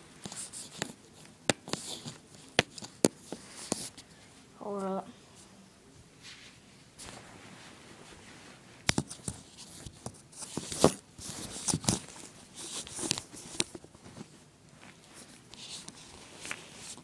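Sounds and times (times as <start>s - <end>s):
rustling scrapes: 6.2s - 17.0s.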